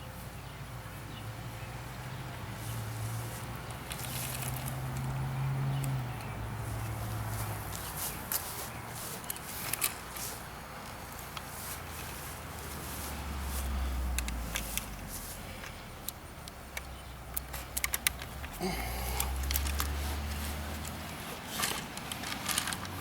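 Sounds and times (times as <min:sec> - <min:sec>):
slingshot rifle clicks and rattles: 0:02.6 - 0:23.0
rustling: 0:06.6 - 0:15.9, 0:17.5 - 0:23.0.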